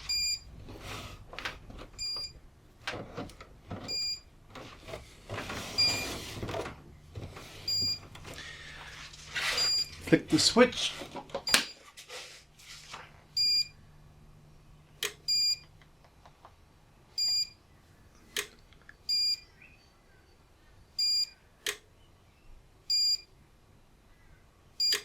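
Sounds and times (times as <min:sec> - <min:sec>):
short high alarm beeps: 0:00.0 - 0:00.5, 0:03.9 - 0:04.2, 0:05.8 - 0:06.1, 0:07.7 - 0:08.0, 0:09.6 - 0:10.0, 0:13.4 - 0:13.8, 0:15.3 - 0:15.6, 0:17.2 - 0:17.6, 0:19.1 - 0:19.4, 0:21.0 - 0:21.4, 0:22.9 - 0:23.3.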